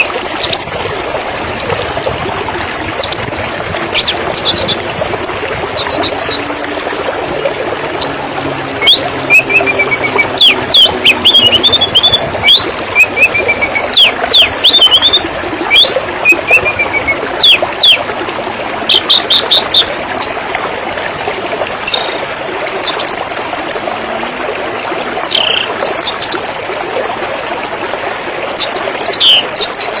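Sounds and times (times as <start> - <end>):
birds chirping and trilling: 0.0 - 1.2, 2.8 - 6.5, 8.0 - 18.1, 18.9 - 20.4
stream trickling and gurgling: 0.0 - 30.0.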